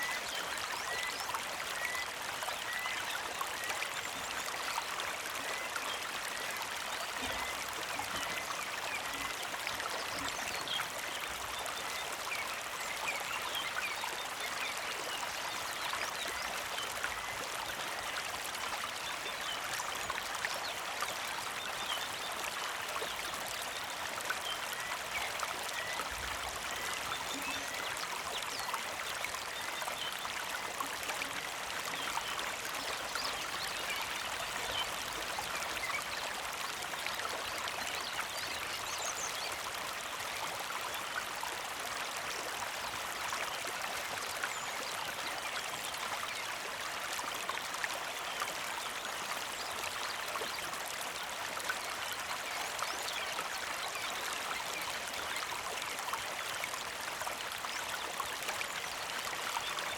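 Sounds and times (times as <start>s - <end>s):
creek flowing over stones: 0.0s - 59.9s.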